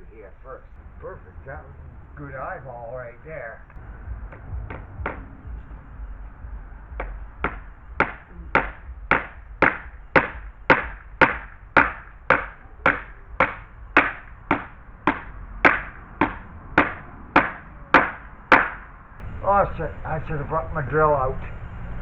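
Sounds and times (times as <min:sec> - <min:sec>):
hammer blows: 0:00.0 - 0:22.0.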